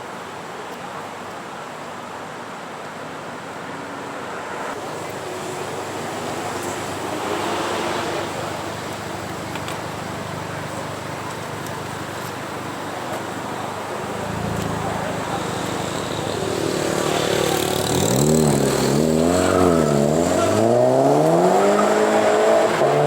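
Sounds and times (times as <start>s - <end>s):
car driving past: 4.8s - 9.2s, 14.0s - 23.0s.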